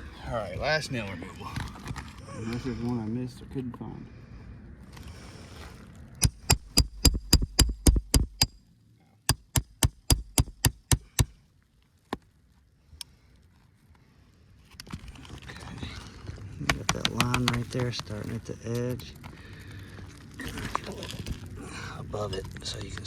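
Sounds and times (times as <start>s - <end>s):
hammer tapping metal: 6.2s - 8.6s, 9.3s - 11.3s.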